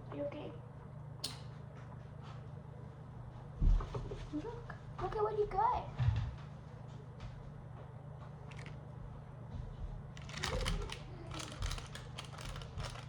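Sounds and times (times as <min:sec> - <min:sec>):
packaging rustling and clicking: 0:10.2 - 0:13.0.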